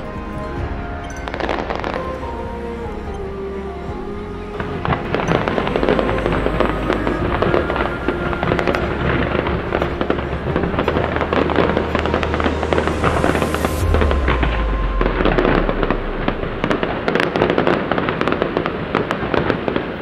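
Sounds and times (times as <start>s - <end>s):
music playing: 0.0s - 20.0s
fireworks crackling and popping: 5.1s - 20.0s.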